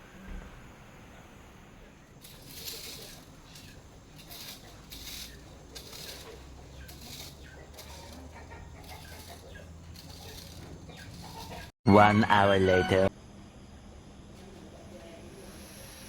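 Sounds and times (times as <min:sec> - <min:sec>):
scratchy scraping strokes: 0:02.2 - 0:11.8.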